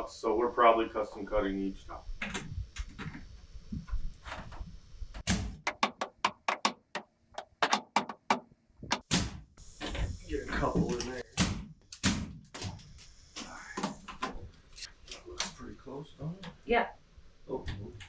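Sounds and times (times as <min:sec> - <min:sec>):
hammer driving nails into wood: 0:05.7 - 0:09.2.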